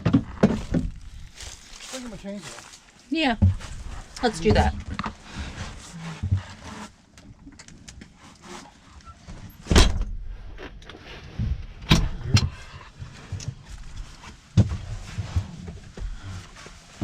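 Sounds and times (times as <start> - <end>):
rustling handling noise: 0.5 - 7.2
low thuds: 3.2 - 5.6.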